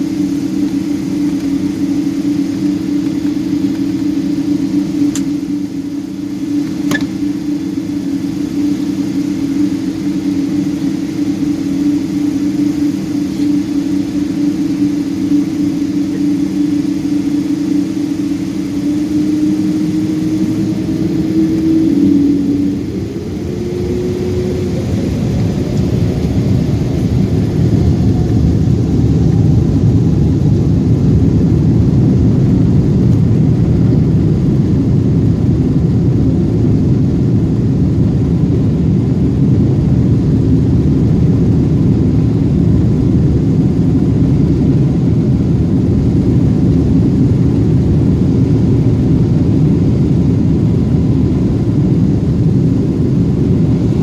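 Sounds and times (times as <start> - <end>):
jet engines spooling up in cabin: 0.0 - 54.0.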